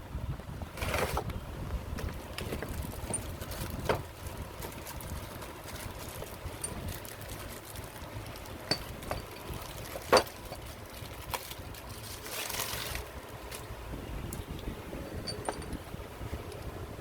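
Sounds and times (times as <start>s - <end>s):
metallic clink: 8.6s - 9.4s, 15.1s - 15.8s.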